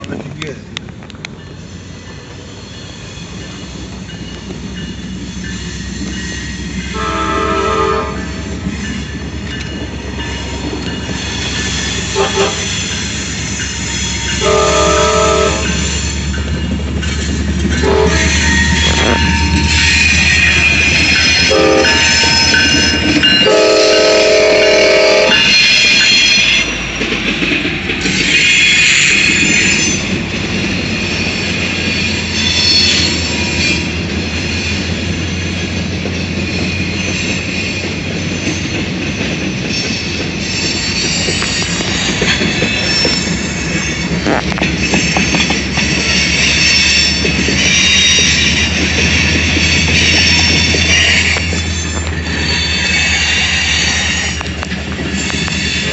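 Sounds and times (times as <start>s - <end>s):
train rumble: 0.0s - 55.9s
wheel squeal on rails: 1.3s - 55.9s
locomotive air horn blasts: 6.9s - 8.5s, 12.1s - 12.8s, 14.3s - 15.8s, 17.8s - 20.2s, 21.4s - 25.6s.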